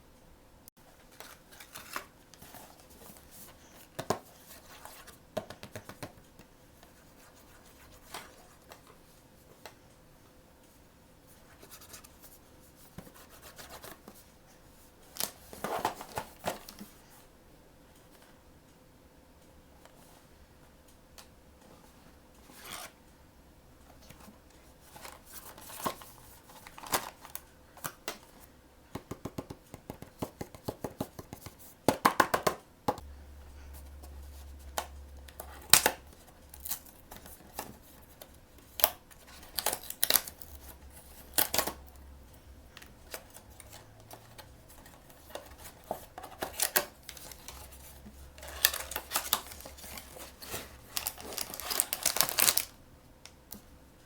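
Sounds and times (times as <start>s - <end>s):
plastic packaging clicks and snips: 34.7s - 41.8s, 42.8s - 47.8s, 48.4s - 53.6s
wrapping crinkling and tearing: 35.4s - 41.9s, 44.7s - 52.8s.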